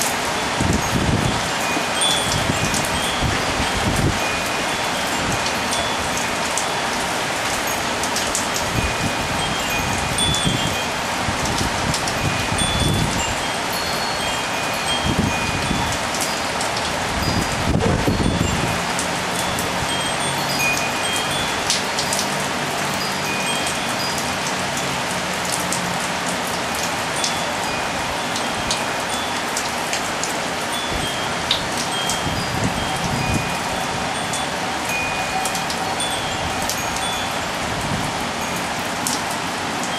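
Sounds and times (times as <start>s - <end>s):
metal wind chimes ringing: 0.0s - 39.9s
steady rain spattering: 0.0s - 39.9s
water dripping: 11.4s - 37.4s.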